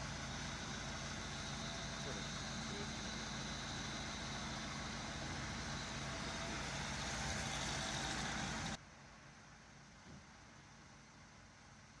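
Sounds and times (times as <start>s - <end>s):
diesel engine idling: 0.0s - 8.8s.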